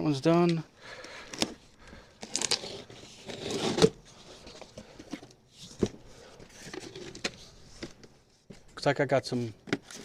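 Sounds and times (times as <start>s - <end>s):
packaging rustling and scraping: 1.2s - 8.8s.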